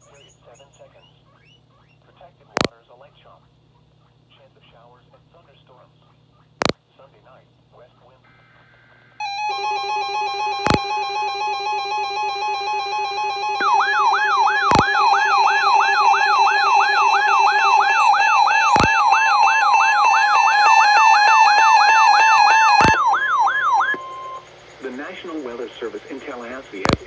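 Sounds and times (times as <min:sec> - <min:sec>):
sharp clicks: 0:09.2 - 0:23.1, 0:26.8 - 0:27.0
pulsing alarm beeps: 0:09.2 - 0:24.4
up-and-down siren wail: 0:09.2 - 0:24.4.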